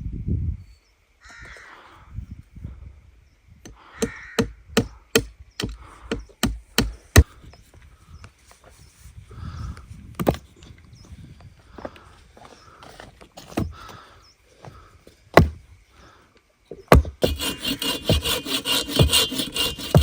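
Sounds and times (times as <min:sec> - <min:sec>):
sharp chopping strikes: 0:15.4 - 0:15.6, 0:16.9 - 0:20.0.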